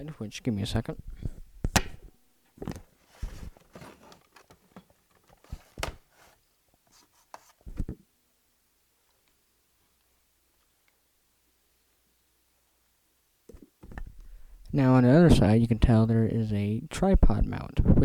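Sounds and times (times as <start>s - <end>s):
camcorder handling knocks and rubs: 1.2s - 6.3s.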